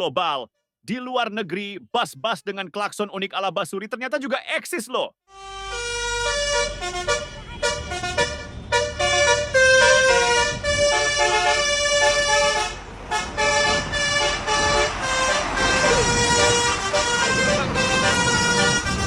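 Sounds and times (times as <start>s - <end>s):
musical air horn tune: 5.3s - 19.0s
engine rumble: 5.5s - 19.0s.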